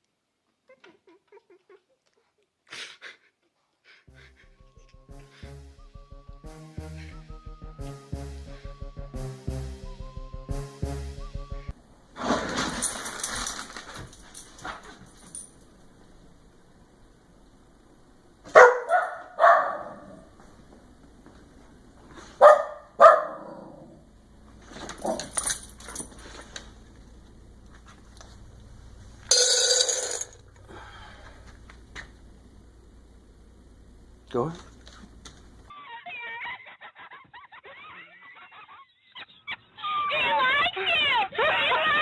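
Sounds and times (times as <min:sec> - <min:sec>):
dog barking: 0:18.5 - 0:20.3, 0:22.4 - 0:23.9, 0:25.0 - 0:25.3.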